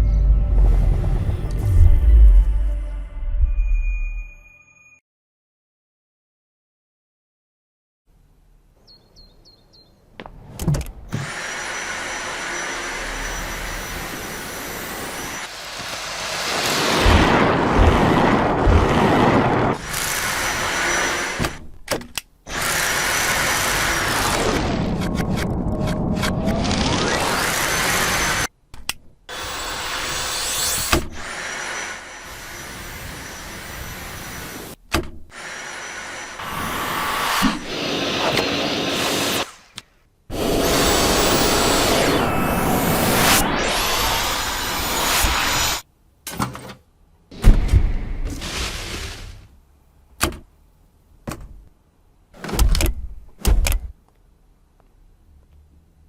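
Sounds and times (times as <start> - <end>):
vacuum cleaner motor whining: 11.2 - 17.1, 35.5 - 39.4.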